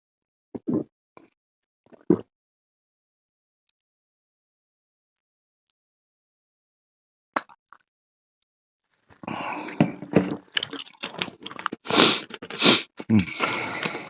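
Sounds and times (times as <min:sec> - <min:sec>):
wet chewing and smacking: 0:10.3 - 0:12.6.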